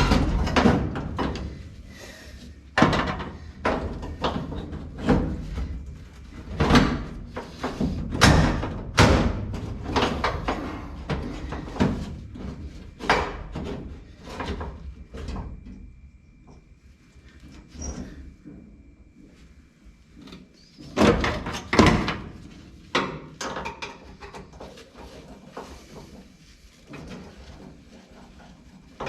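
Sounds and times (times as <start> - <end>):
metal knocks and clanks: 0.0 - 1.6, 6.4 - 15.6.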